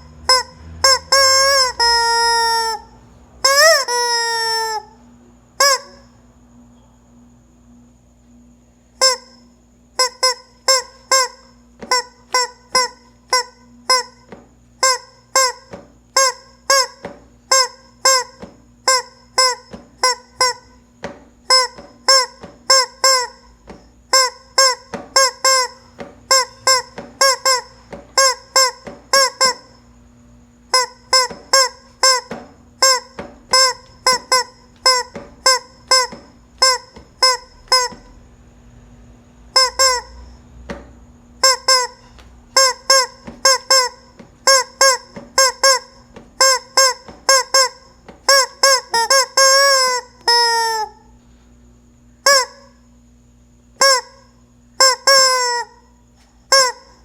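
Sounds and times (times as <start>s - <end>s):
chicken squawking: 0.3s - 4.9s, 30.7s - 38.1s.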